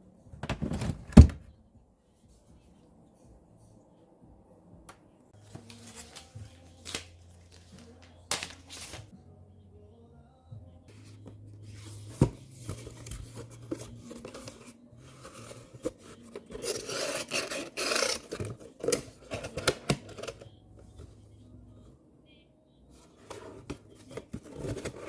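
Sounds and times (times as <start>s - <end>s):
stiff paper rustling and scraping: 5.4s - 9.1s, 10.9s - 20.4s, 23.2s - 25.0s.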